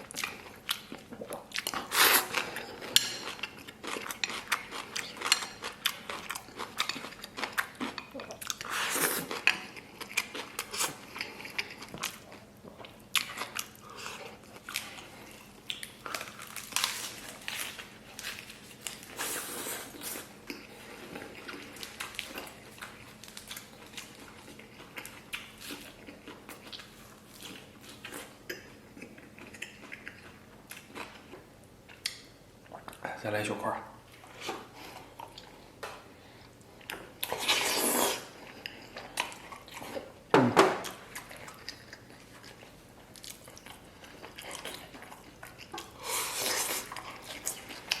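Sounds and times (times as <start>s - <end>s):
person chewing food: 0.0s - 33.0s, 34.0s - 48.0s.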